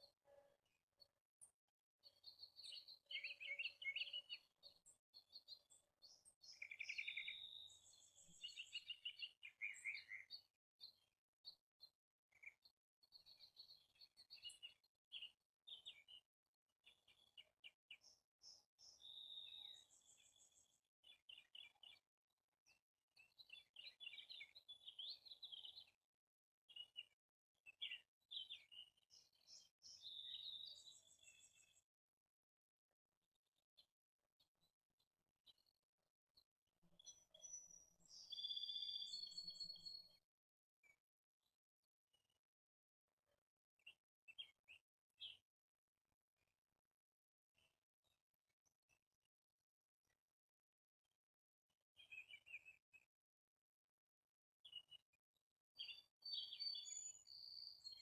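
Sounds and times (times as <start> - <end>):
songbirds chirping and singing: 2.0 - 11.6, 12.3 - 16.2, 16.8 - 22.0, 22.7 - 26.0, 26.7 - 31.8, 37.0 - 40.2, 55.8 - 58.0.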